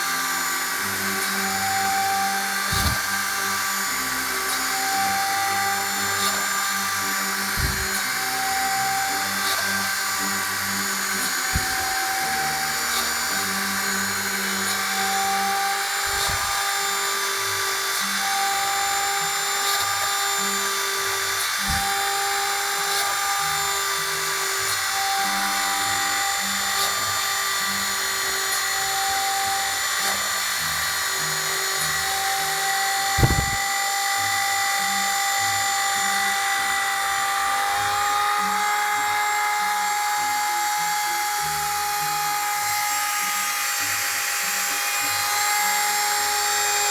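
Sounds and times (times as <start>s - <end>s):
short motor tones: 0.0s - 19.0s, 20.4s - 25.8s, 31.7s - 35.1s
rotary tool whining: 0.0s - 46.9s
brief low thumps: 33.2s - 33.6s.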